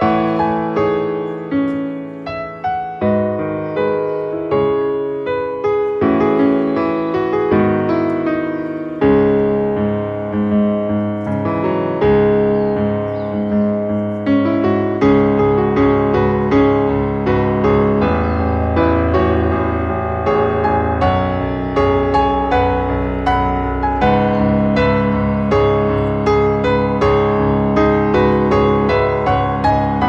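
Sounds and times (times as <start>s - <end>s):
gentle piano music: 0.0s - 30.0s.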